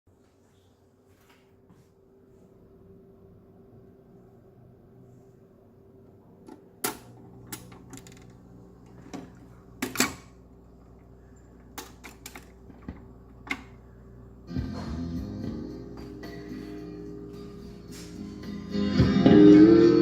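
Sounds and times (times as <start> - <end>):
steady low hum: 0.1 - 20.0
music from record: 14.5 - 20.0.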